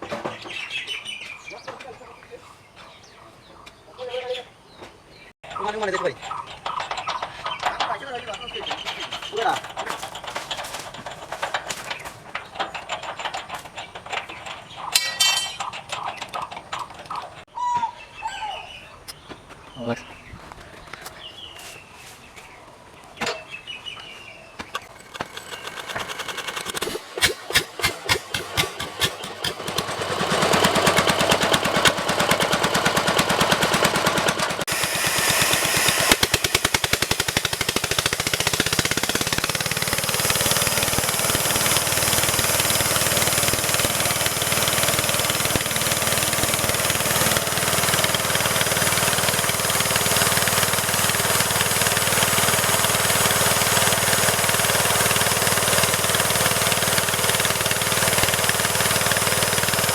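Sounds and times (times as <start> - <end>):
engine chugging then running: 5.5 - 17.5, 24.6 - 59.9.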